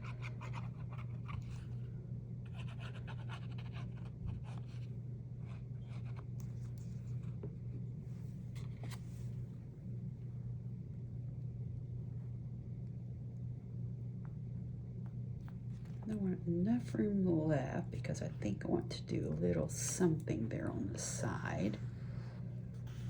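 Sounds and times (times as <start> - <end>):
steady low hum: 0.0 - 23.0
paper rustling and scraping: 8.5 - 9.4.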